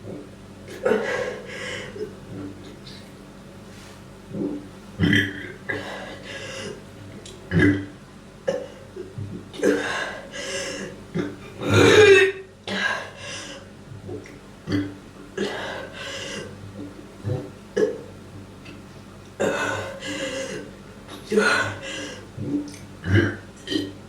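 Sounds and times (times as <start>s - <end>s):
person gagging: 0.7s - 2.1s, 10.8s - 13.0s
person belching: 4.3s - 5.8s, 7.5s - 7.9s, 11.1s - 12.4s, 14.7s - 15.6s, 17.2s - 18.1s, 22.4s - 24.0s.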